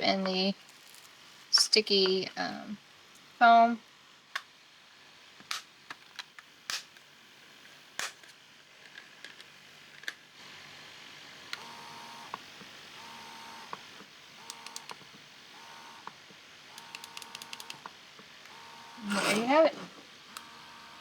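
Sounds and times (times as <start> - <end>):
plastic parts clicking: 8.0 - 10.2.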